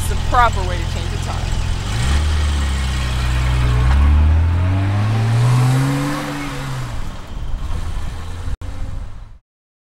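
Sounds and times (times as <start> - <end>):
car engine accelerating: 0.0 - 9.4.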